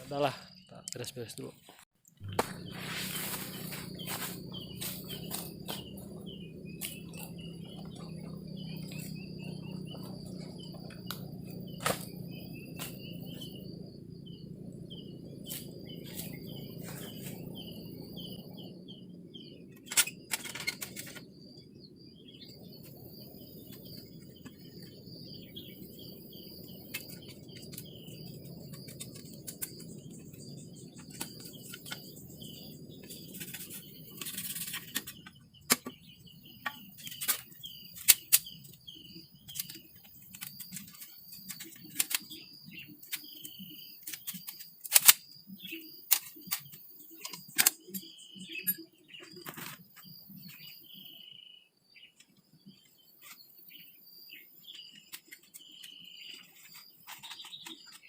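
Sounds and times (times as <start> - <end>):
low steady rumble: 2.2 - 19.7
bird chirping rapidly: 2.2 - 58.0
high insect buzz: 2.3 - 21.3, 22.1 - 52.1.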